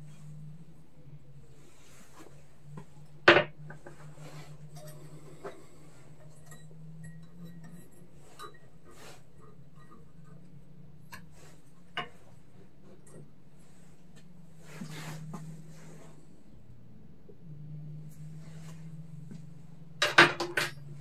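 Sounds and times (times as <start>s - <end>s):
steady low hum: 0.0s - 21.0s
metal tools clinking and knocking: 20.0s - 21.0s.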